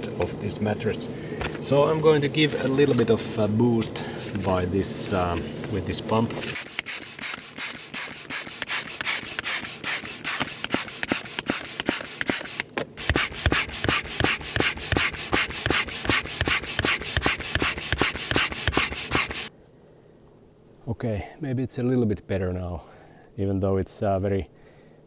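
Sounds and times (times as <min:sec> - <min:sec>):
manual air pump puffing: 0:04.0 - 0:19.5.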